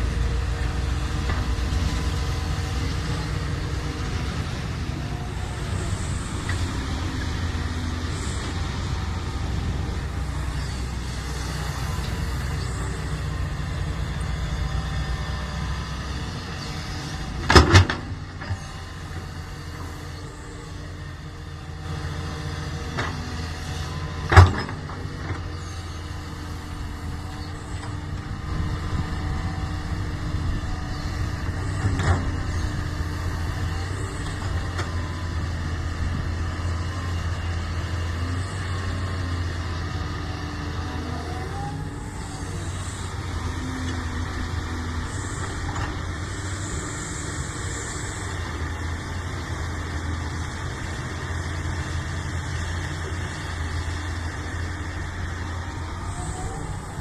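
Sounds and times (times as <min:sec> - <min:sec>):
excavator diesel engine: 0:00.0 - 0:57.0.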